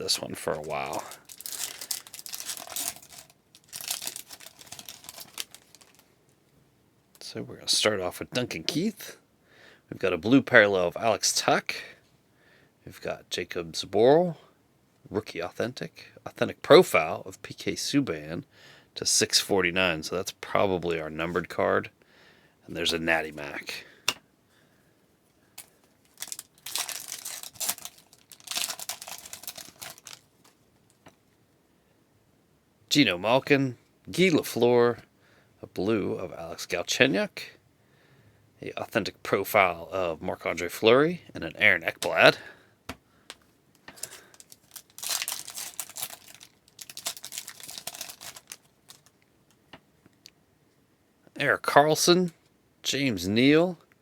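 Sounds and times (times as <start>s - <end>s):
foil wrapper tearing and crinkling: 0.0s - 6.1s, 25.6s - 31.0s, 44.0s - 49.1s.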